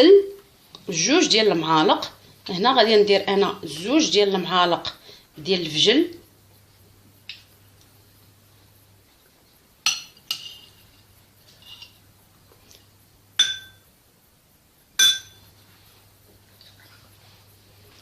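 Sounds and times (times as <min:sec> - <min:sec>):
spoon clinking against container: 0:13.4 - 0:13.8, 0:15.0 - 0:15.4.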